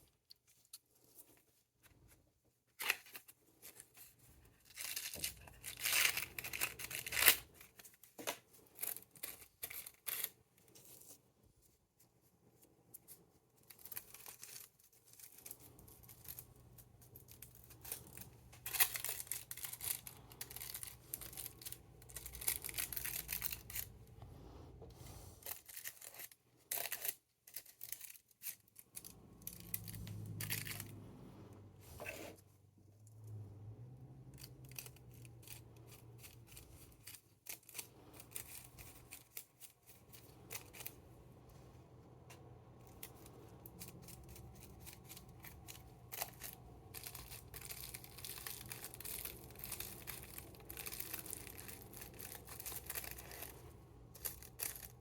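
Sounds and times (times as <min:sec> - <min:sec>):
rolling paper crinkling and tearing: 0:42.9 - 0:55.0.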